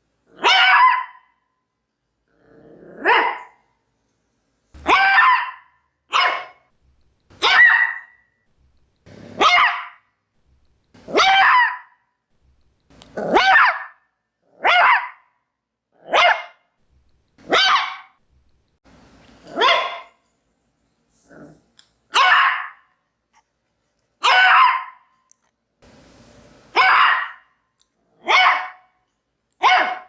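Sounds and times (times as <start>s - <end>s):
dog barking: 0.3s - 1.4s, 3.0s - 3.6s, 4.8s - 6.7s, 7.4s - 8.3s, 9.2s - 10.1s, 11.0s - 12.0s, 13.2s - 15.4s, 16.0s - 16.7s, 17.4s - 18.2s, 19.4s - 20.2s, 22.1s - 22.9s, 24.2s - 25.1s, 26.7s - 27.6s, 28.2s - 29.0s, 29.6s - 30.0s
dog growling: 2.3s - 3.2s, 9.1s - 9.4s, 21.2s - 21.7s.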